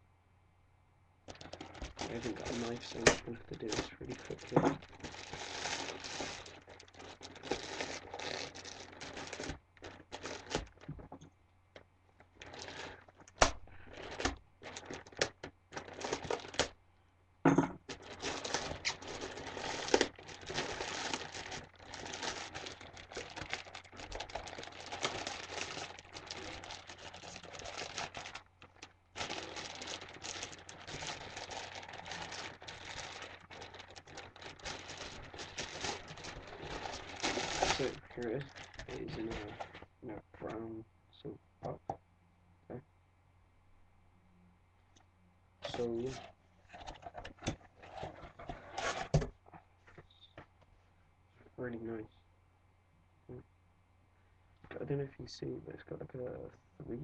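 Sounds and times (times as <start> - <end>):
packaging being torn open: 1.3 - 10.9, 12.4 - 16.7, 17.9 - 39.8.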